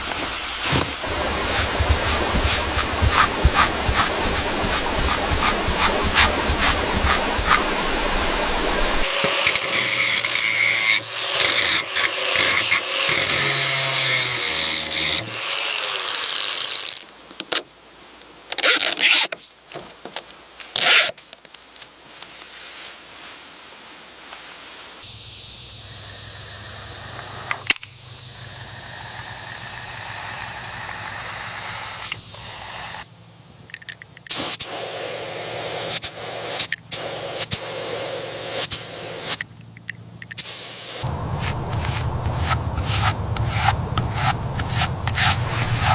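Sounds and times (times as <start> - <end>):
scraping and rubbing: 0.2 - 9.2, 41.0 - 45.9
steady hum: 0.9 - 9.1, 40.2 - 45.9.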